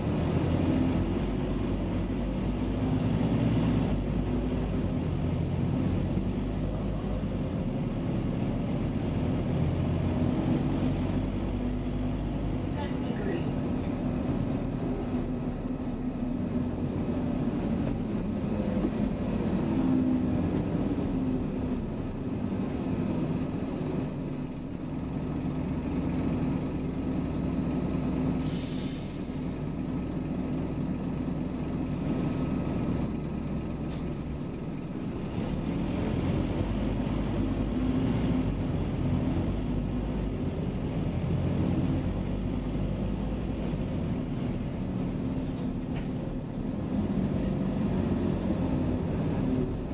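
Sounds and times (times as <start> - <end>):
bus diesel engine running: 0.0 - 49.9
air brakes hissing: 28.4 - 29.6.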